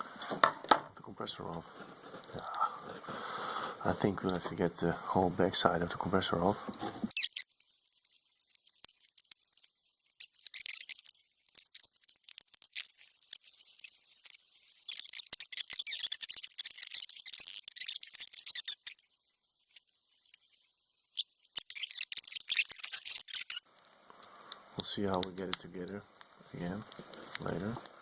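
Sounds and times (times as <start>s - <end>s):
hand tools scratching and squeaking: 6.8s - 23.7s
small clicks: 8.5s - 19.1s.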